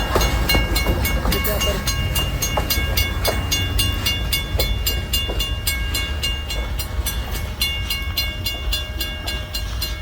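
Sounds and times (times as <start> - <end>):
crossing bell ringing rapidly: 0.0 - 10.0
freight train rumbling: 0.0 - 10.0.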